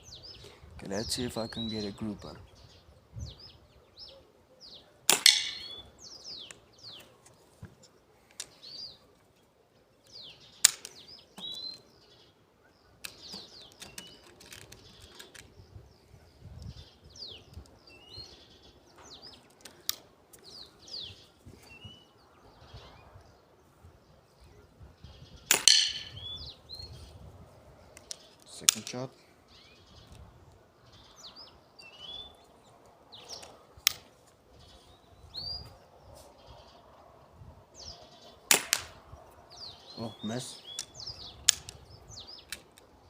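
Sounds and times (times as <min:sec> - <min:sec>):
small birds chirping: 0:00.0 - 0:43.0
air rifle firing: 0:05.1 - 0:05.8, 0:25.5 - 0:26.2, 0:38.5 - 0:39.0.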